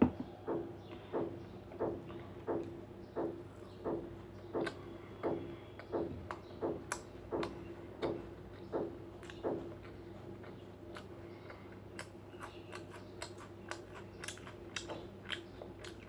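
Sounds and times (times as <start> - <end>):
steady low hum: 0.0 - 16.0
close chewing: 4.6 - 16.0.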